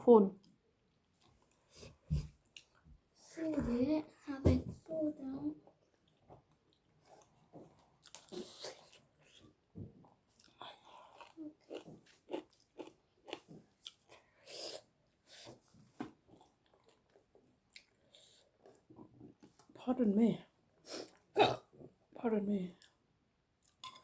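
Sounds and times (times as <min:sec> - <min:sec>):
person chewing food: 0:00.9 - 0:02.8, 0:05.9 - 0:19.6.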